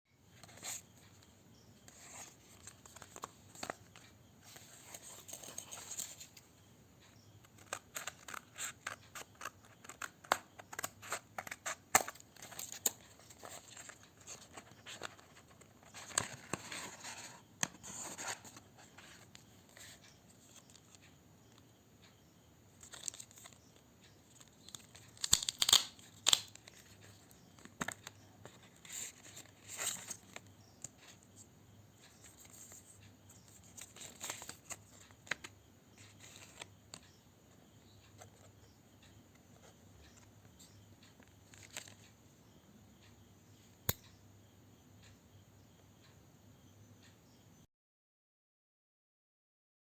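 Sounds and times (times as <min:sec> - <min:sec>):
small sharp clicks and taps: 0:07.1 - 0:16.9.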